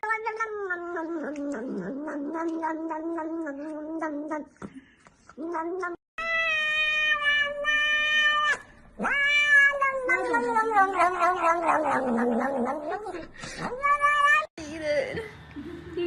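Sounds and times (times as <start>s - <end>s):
cat meowing: 5.4s - 13.0s, 13.6s - 14.5s.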